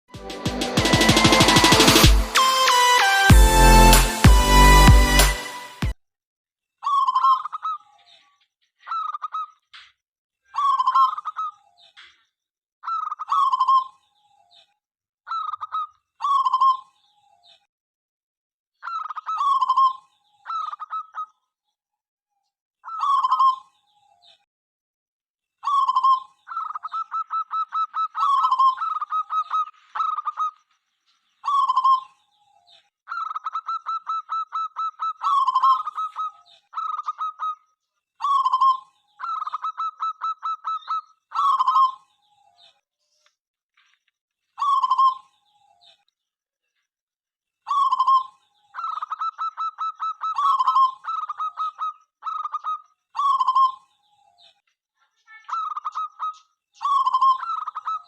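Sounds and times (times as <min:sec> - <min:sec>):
rapid staccato bird notes: 0:00.2 - 0:05.8.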